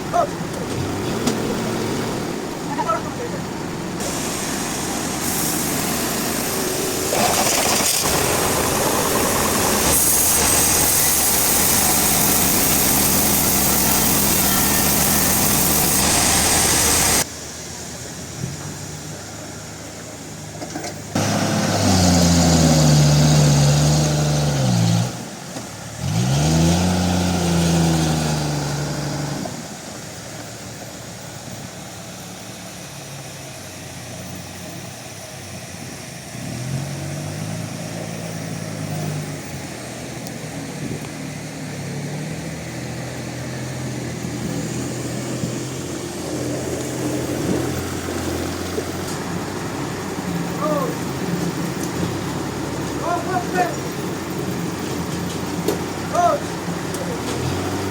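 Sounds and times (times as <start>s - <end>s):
machinery roaring: 0.0s - 17.3s, 21.1s - 30.3s
engine drone: 0.0s - 57.9s.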